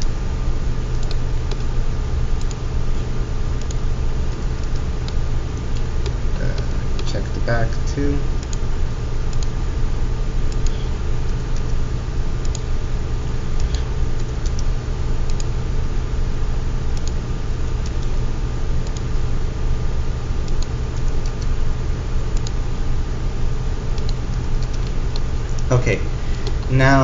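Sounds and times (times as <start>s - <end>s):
loud low hum: 0.0s - 27.0s
computer mouse and keyboard clicks: 13.6s - 14.7s.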